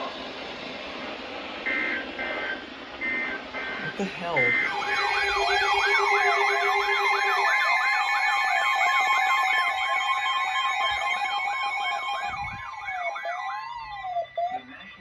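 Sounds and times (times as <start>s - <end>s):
electronic siren yelping: 1.7s - 15.0s.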